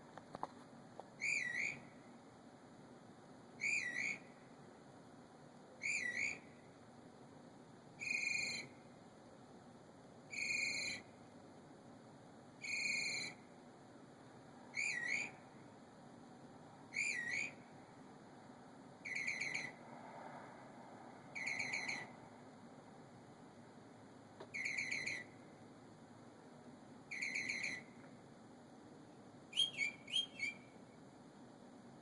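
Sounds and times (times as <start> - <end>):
bird whistling at night: 1.2 - 2.0, 3.6 - 4.3, 5.8 - 6.6, 8.0 - 8.8, 10.3 - 11.1, 12.6 - 13.4, 14.7 - 15.4, 16.9 - 17.6, 19.0 - 19.8, 21.3 - 22.1, 24.5 - 25.4, 27.1 - 28.0, 29.5 - 30.8.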